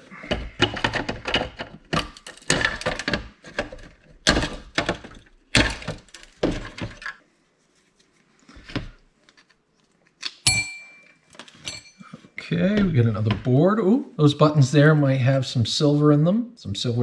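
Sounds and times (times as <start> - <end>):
printer parts knocking and clattering: 0.1 - 7.2
sharp metallic clink: 10.4 - 12.1.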